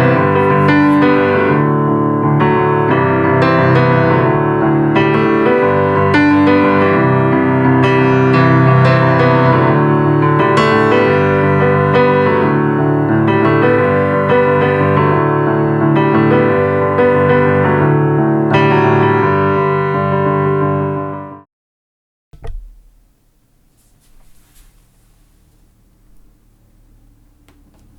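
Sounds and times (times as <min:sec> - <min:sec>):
piano music from a speaker: 0:00.0 - 0:21.4.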